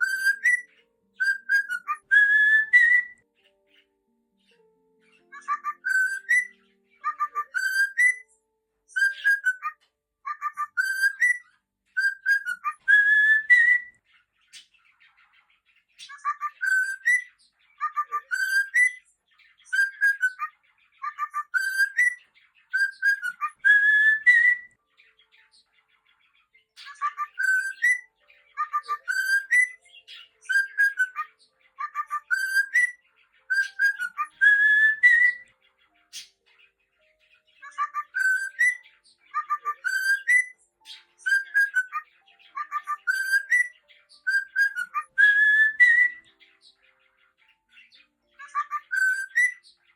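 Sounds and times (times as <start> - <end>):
cockatiel whistling: 0.0 - 3.2, 5.2 - 8.3, 8.9 - 14.0, 16.0 - 24.8, 26.8 - 35.5, 37.6 - 46.4, 48.4 - 49.7.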